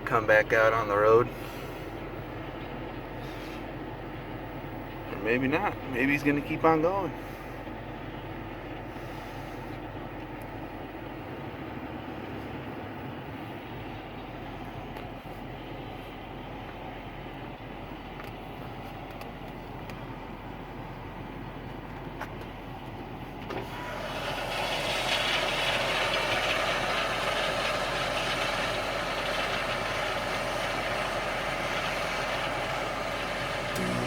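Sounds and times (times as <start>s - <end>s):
tractor engine running: 0.0s - 34.0s.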